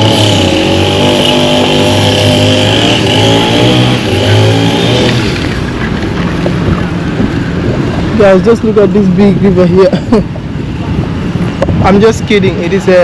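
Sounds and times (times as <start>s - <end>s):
vehicle engine running: 0.0s - 9.0s.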